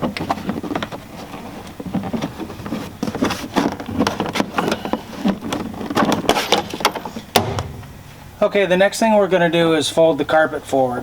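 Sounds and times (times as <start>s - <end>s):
plastic rustling and rattling: 0.0s - 7.7s.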